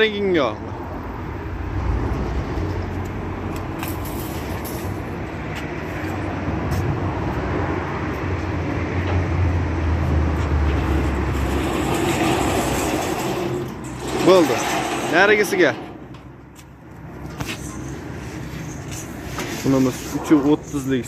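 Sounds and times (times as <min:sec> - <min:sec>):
machine humming and rumbling: 0:10.7 - 0:16.4.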